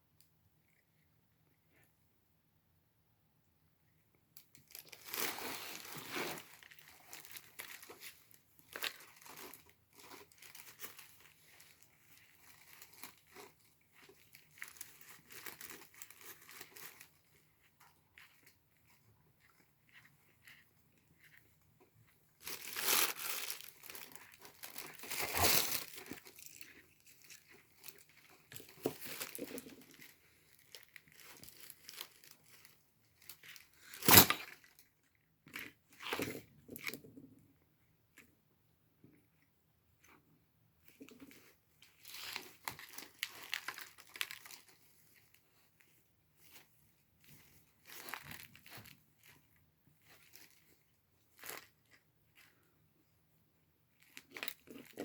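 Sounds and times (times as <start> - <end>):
packaging crinkling and tearing: 4.4 - 19.6, 22.4 - 34.9, 41.0 - 45.7, 47.2 - 52.6, 54.0 - 55.0.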